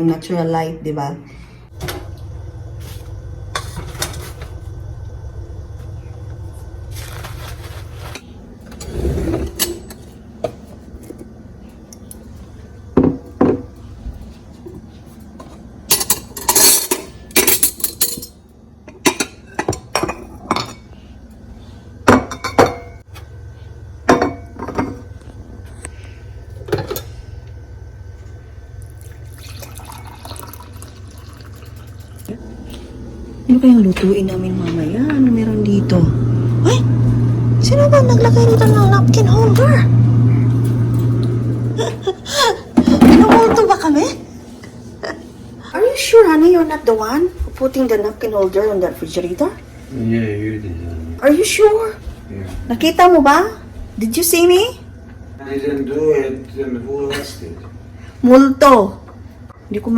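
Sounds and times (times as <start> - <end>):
steady low hum: 0.0 - 59.9
dishes and cutlery clinking: 15.9 - 18.4, 22.1 - 23.0.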